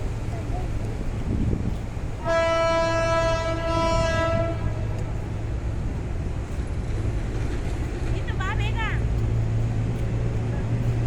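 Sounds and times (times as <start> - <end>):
train horn blast: 2.2 - 5.1.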